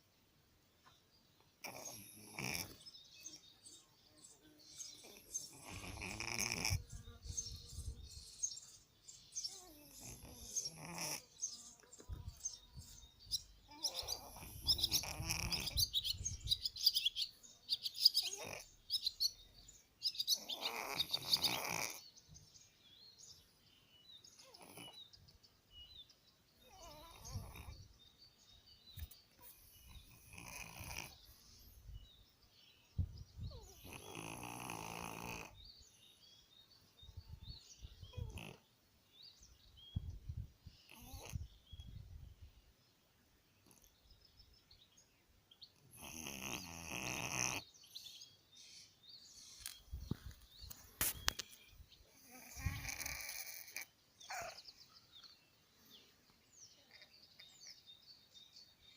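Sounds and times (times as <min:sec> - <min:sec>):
cat snoring: 0:01.6 - 0:02.8, 0:05.0 - 0:06.8, 0:09.6 - 0:11.2, 0:13.7 - 0:15.8, 0:20.4 - 0:22.0, 0:26.7 - 0:27.7, 0:30.1 - 0:31.2, 0:33.5 - 0:35.6, 0:38.2 - 0:38.6, 0:40.9 - 0:41.4, 0:46.0 - 0:47.6, 0:52.1 - 0:54.6.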